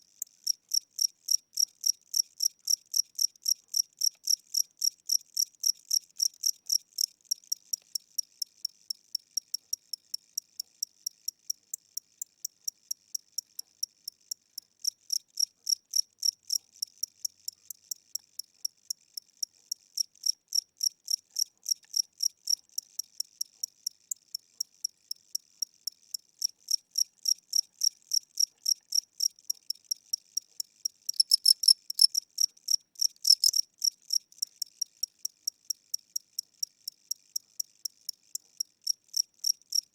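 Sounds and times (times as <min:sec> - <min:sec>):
cricket chirping: 0:00.1 - 0:39.9.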